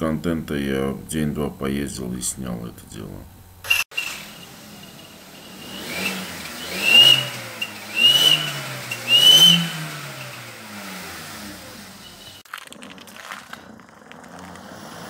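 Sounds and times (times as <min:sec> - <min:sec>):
car engine revving: 0:03.8 - 0:12.5, 0:13.3 - 0:15.0
turbo whistle: 0:05.3 - 0:10.5.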